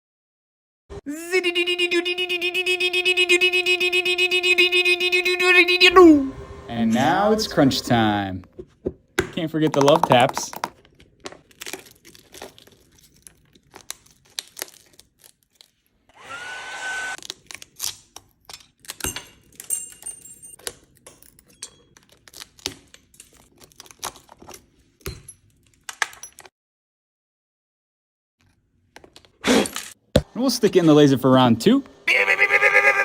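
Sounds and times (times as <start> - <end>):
tools tapping and scraping glass: 18.4 - 26.5.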